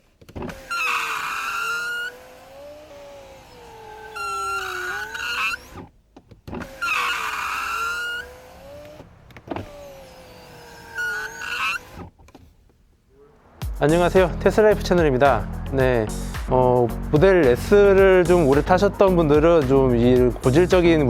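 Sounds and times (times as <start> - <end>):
high squeak of window seal: 0.0 - 12.4
electric window motor running: 0.1 - 12.3.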